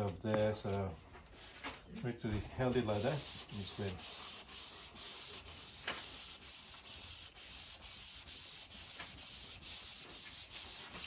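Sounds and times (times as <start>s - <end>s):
sandpaper scraping on metal panel: 2.8s - 11.0s.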